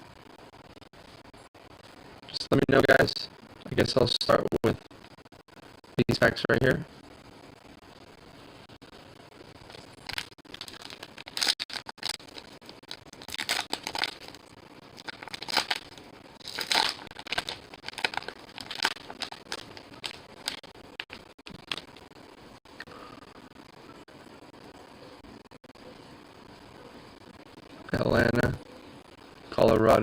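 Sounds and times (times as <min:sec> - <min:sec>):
foil wrappers tearing and crinkling: 0:09.6 - 0:22.0.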